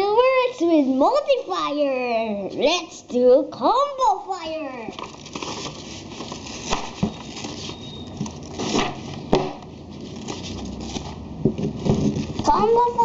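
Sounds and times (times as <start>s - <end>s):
rustling and scraping: 4.8s - 13.0s
sharp knocks: 8.8s - 9.7s.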